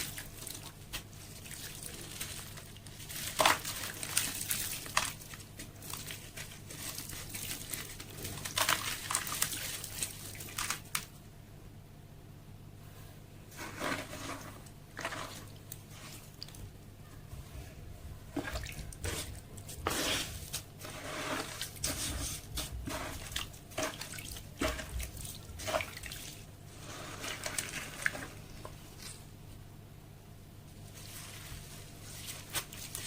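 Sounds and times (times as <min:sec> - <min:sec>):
slab pieces crumbling in water: 0:00.0 - 0:11.1.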